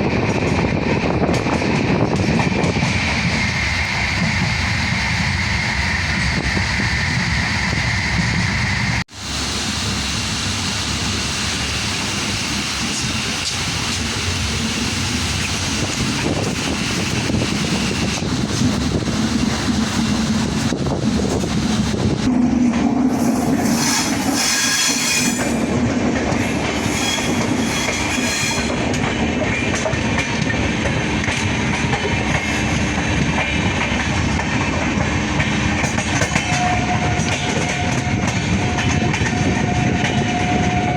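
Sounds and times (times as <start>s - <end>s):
train rumbling along track: 0.0s - 40.9s.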